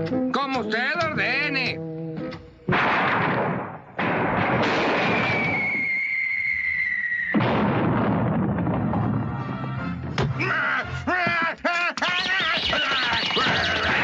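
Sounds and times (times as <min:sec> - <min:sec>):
background score music: 0:00.0 - 0:04.5, 0:08.8 - 0:11.6
sharp crack: 0:02.7 - 0:06.0, 0:07.2 - 0:09.2
cartoon crash and blast: 0:02.7 - 0:09.4
whistle sliding down: 0:05.1 - 0:07.4.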